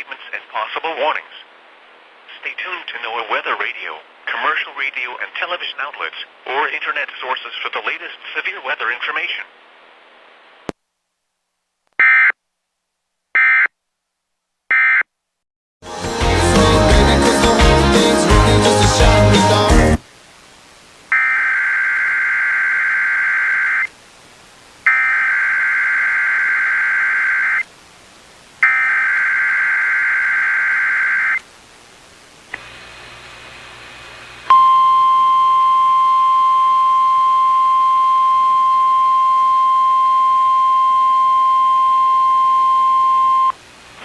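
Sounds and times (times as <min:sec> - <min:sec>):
screechy digital data bursts: 0:24.9 - 0:27.7, 0:28.6 - 0:31.4
single-pitch alarm tone: 0:34.5 - 0:43.5.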